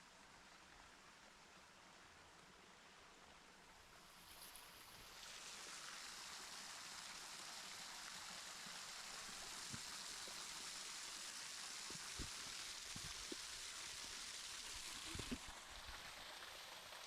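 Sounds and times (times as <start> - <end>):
water running over rocks: 3.8 - 17.0.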